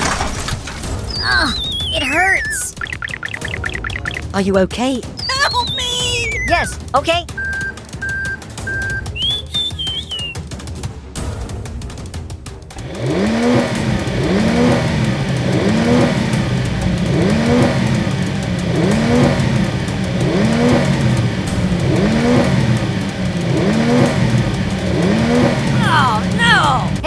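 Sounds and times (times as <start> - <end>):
vehicle engine revving: 5.2 - 10.4, 12.7 - 27.0.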